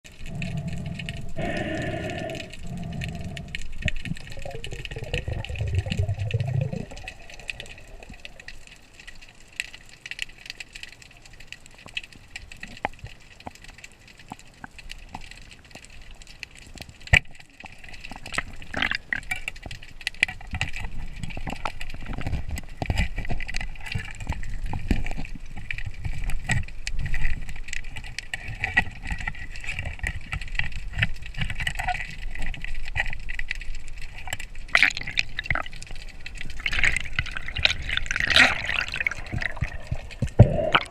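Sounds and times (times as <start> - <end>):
low rumbling movement: 0.1 - 8.4, 35.2 - 40.9
underwater clicks and crackles: 0.1 - 40.9
water gurgling and sloshing: 0.1 - 40.9.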